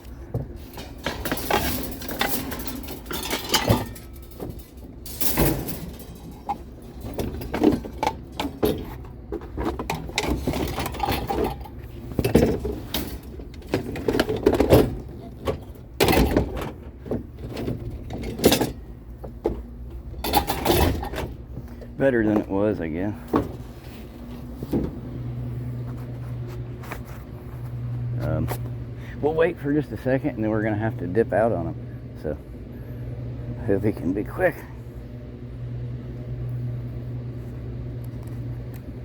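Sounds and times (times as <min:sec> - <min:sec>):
scrap items rustling and clattering: 0:00.1 - 0:28.6.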